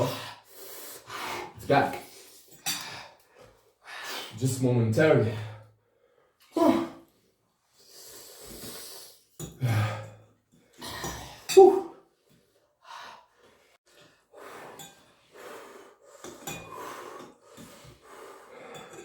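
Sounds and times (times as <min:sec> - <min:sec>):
person breathing hard: 0:12.8 - 0:19.0.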